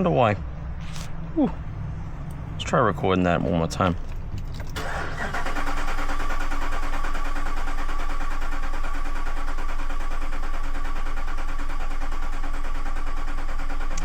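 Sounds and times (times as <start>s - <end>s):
engine cranking on starter: 3.9s - 14.0s.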